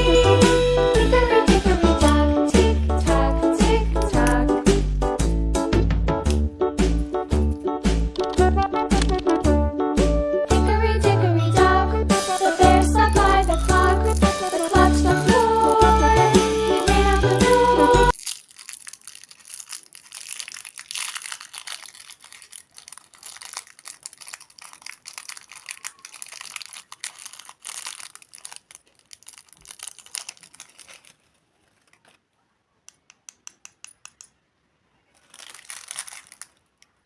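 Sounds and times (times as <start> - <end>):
plastic wrapper crinkling and tearing: 3.3 - 4.4, 6.2 - 9.4, 12.2 - 32.2, 35.0 - 37.0.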